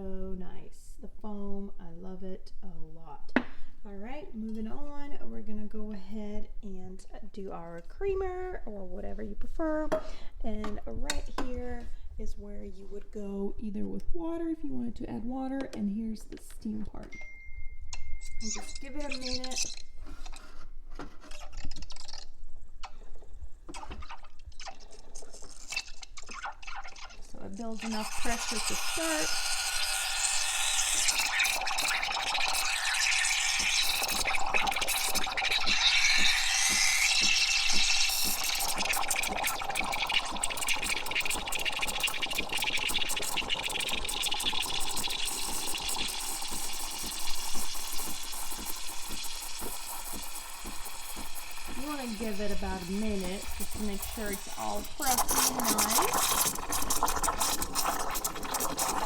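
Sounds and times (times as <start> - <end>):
steam wand sputtering: 25.2 - 59.0.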